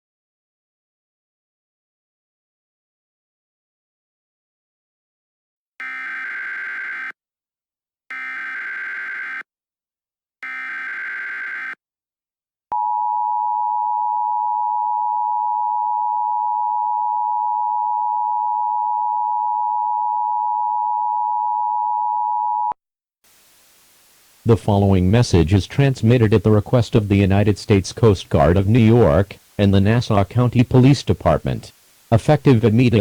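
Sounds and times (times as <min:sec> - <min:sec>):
data header tones: 0:25.8 - 0:33.0.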